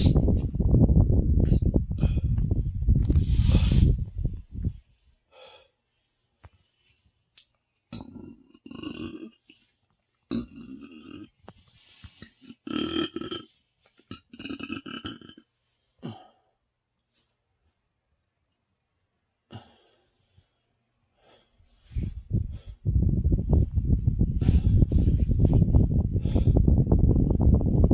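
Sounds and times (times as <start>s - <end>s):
man burping: 7.9s - 9.4s, 10.3s - 11.4s, 12.4s - 15.4s, 16.0s - 16.4s.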